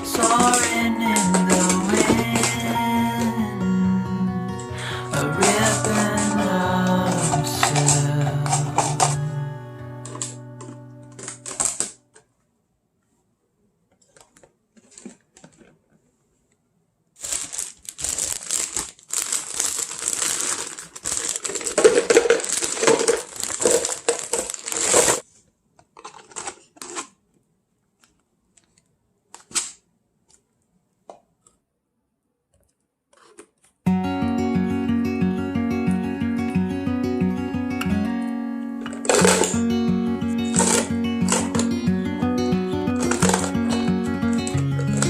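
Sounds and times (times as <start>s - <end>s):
plastic crinkling: 0.0s - 3.4s, 4.8s - 9.2s, 10.1s - 12.2s, 14.0s - 16.0s, 17.2s - 27.2s, 38.9s - 41.9s, 42.9s - 45.0s.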